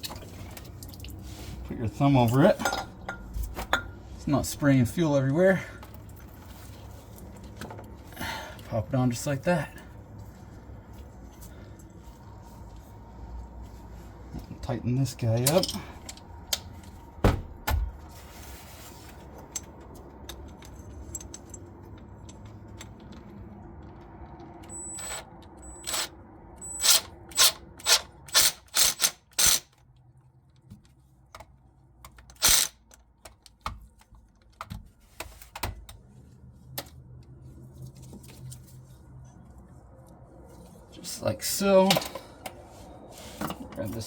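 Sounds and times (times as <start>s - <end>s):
hand tools clicking and clinking: 15.3s - 16.5s, 19.4s - 23.1s.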